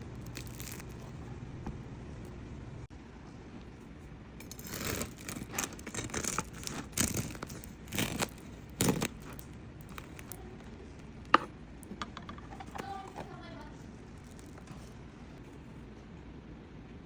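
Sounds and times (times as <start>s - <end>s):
bread crust crunching: 0.0s - 1.8s, 4.4s - 15.4s.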